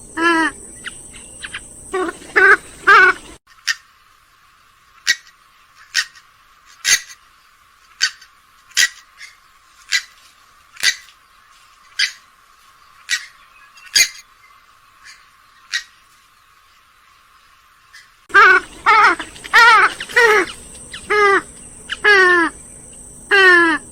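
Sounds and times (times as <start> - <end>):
bird giving short high calls: 18.0 - 22.6.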